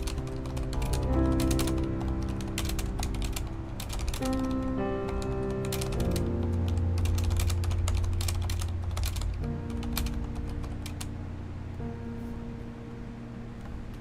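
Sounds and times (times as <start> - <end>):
mechanical keyboard typing: 0.0 - 11.1
calm background music: 0.0 - 14.0.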